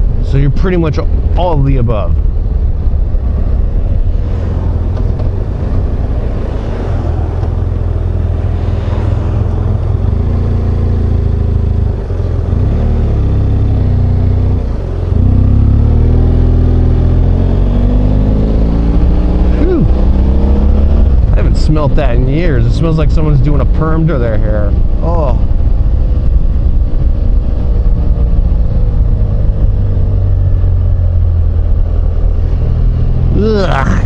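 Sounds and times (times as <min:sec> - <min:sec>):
motorcycle engine accelerating: 0:02.2 - 0:22.8, 0:23.6 - 0:34.0.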